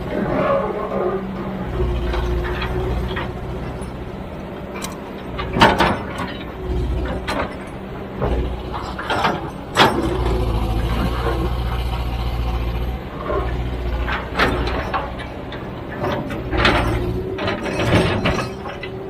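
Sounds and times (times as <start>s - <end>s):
heavy machinery engine rumble: 0.0s - 19.0s
sharp metal clanks and knocks: 4.7s - 11.7s, 13.2s - 19.0s.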